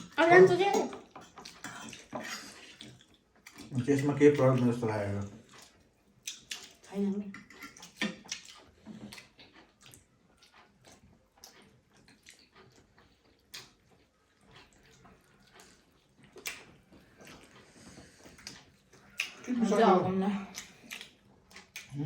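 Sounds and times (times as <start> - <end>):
people chewing food: 0.0 - 22.0.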